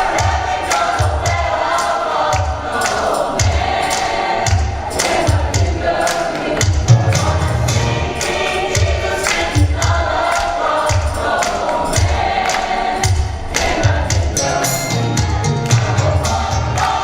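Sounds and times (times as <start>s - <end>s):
gospel choir singing: 0.0s - 17.0s
bass thumps: 6.8s - 8.1s.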